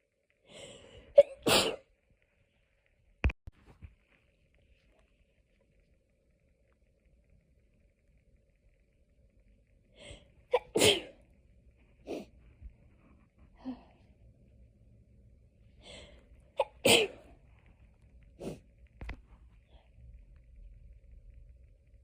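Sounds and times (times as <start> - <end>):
person sneezing: 1.2 - 1.8, 10.5 - 11.1, 16.6 - 17.2.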